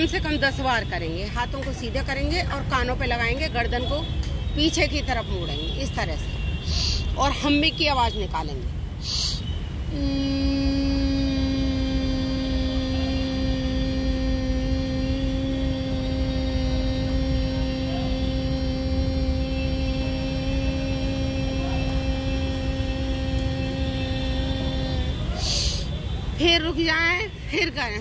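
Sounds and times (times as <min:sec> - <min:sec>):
woman humming: 0:09.9 - 0:25.9.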